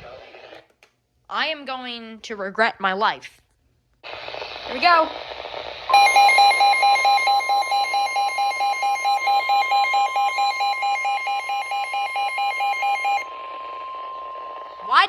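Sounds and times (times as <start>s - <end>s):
steady warning alarm tone: 5.9s - 15.0s.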